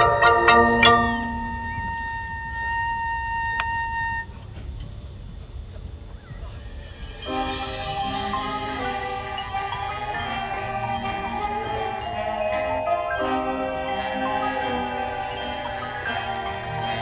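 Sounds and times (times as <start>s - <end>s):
bright percussion strike: 0.0s - 1.7s
mallet percussion chords: 0.0s - 1.7s, 6.8s - 17.0s
marching band held high note: 0.0s - 4.2s.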